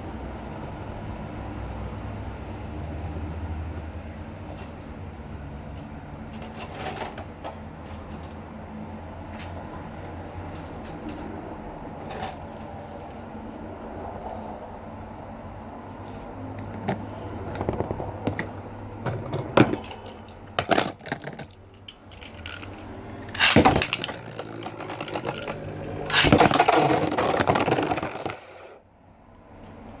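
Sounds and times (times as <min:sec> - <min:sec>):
grinding and rattling: 0:16.1 - 0:28.8
spinning tops clattering: 0:22.2 - 0:28.6.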